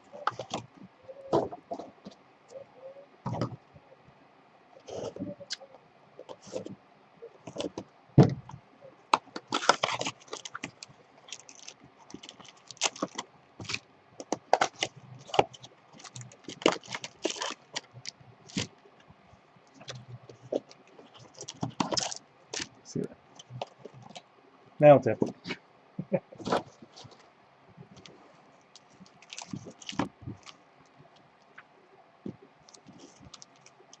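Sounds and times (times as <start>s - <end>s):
wrappers crinkling: 9.4s - 18.7s, 19.8s - 22.8s, 28.0s - 30.6s.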